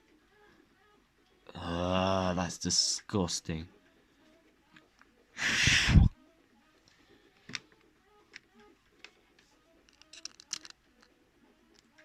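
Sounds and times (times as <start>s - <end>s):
breathy puff of air: 5.4s - 6.1s.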